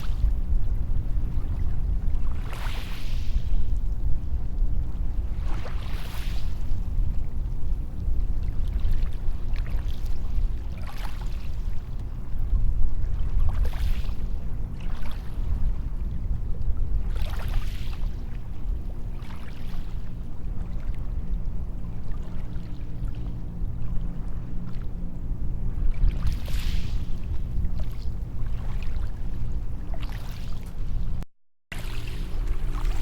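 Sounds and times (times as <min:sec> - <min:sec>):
small waves breaking on beach: 0:01.4 - 0:03.6, 0:05.4 - 0:06.8, 0:13.2 - 0:14.2, 0:26.0 - 0:29.2, 0:31.7 - 0:33.0.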